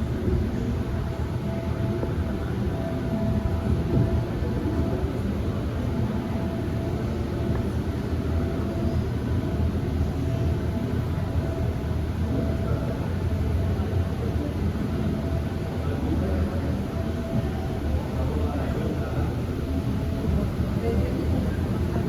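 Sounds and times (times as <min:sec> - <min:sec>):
boat ride rumble: 0:00.0 - 0:22.0.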